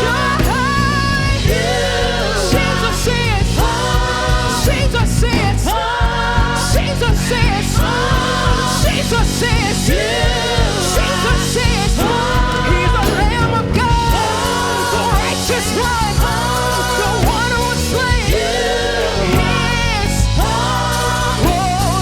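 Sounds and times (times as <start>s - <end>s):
bass: 0.0s - 22.0s
steady drum beat: 0.0s - 22.0s
worship song with band: 0.0s - 22.0s.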